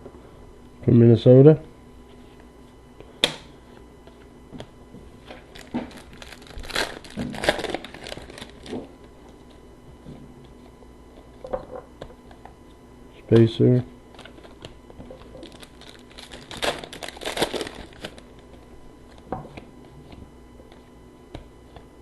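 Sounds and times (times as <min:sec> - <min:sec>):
card pack wrapper crinkling and tearing: 0:05.4 - 0:08.9, 0:15.2 - 0:18.4.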